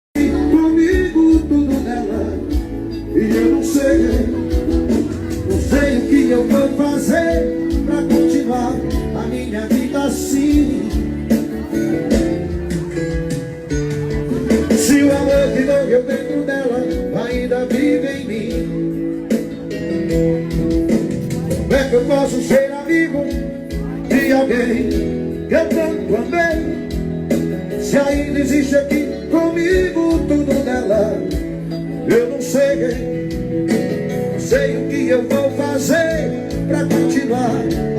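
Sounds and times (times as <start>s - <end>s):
electronic keyboard melody: 0.1s - 37.9s
steady drum beat: 0.2s - 29.1s.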